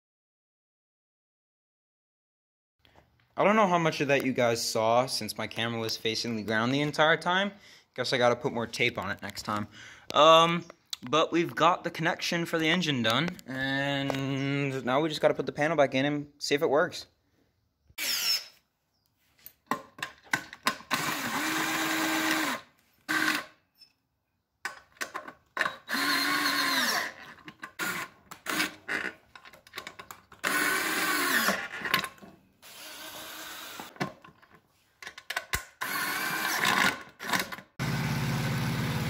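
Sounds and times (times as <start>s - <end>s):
power drill driving screws: 18.0s - 18.6s, 20.7s - 23.6s, 25.6s - 29.2s, 30.4s - 34.0s, 35.8s - 37.6s.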